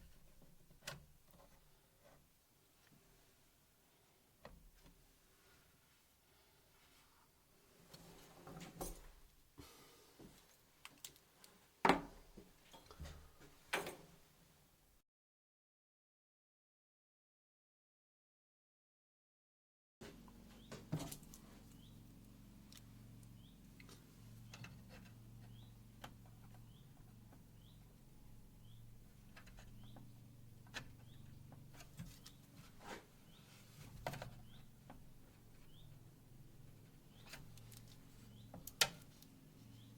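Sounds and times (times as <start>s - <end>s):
low steady hum: 20.0s - 39.9s.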